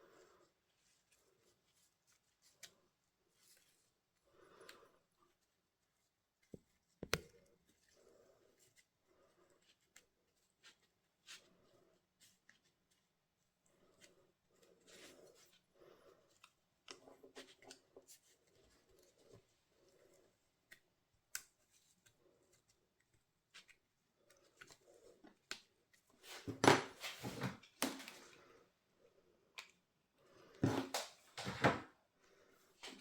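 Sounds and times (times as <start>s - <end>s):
paper and tools tapping and clicking: 6.4s - 7.4s.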